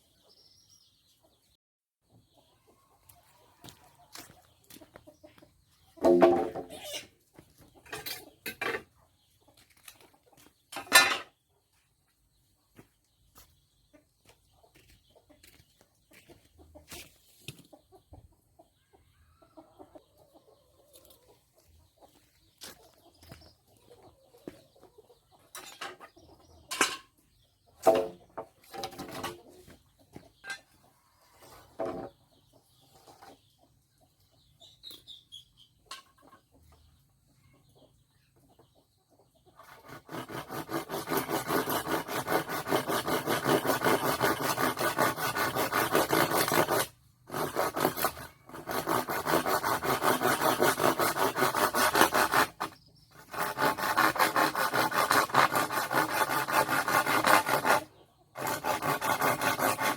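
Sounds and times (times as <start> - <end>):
hand tool rasping: 39.6 - 59.9.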